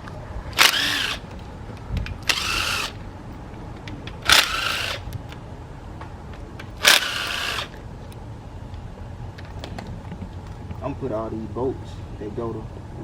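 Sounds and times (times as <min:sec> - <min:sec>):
cordless impact wrench bursts: 0:00.6 - 0:01.2, 0:02.2 - 0:03.0, 0:04.2 - 0:05.1, 0:06.8 - 0:07.8.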